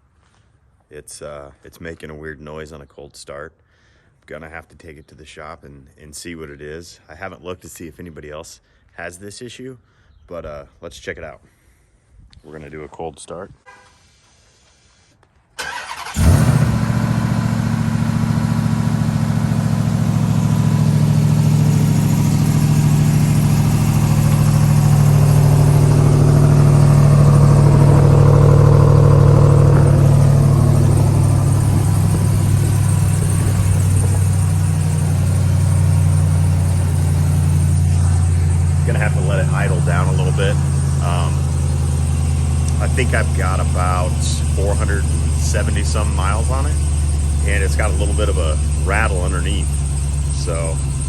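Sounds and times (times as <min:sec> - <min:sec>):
starter motor cranking: 0:15.6 - 0:17.0
engine idling loudly: 0:15.8 - 0:51.0.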